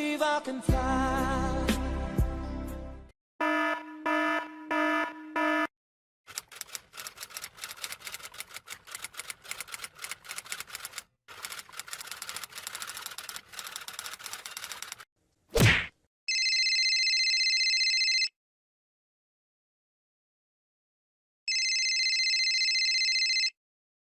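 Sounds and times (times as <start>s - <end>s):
rapid key clicks: 6.3s - 15.0s.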